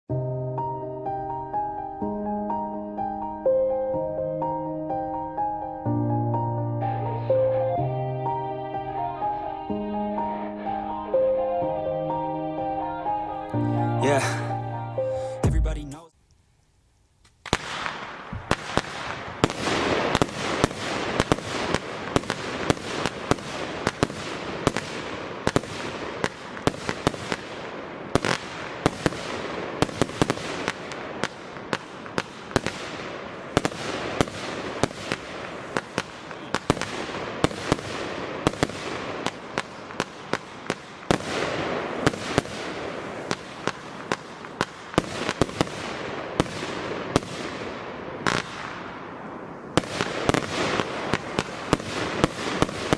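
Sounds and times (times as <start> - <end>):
fireworks launching and bursting: 14.0 - 14.5, 15.2 - 16.1, 17.4 - 52.9.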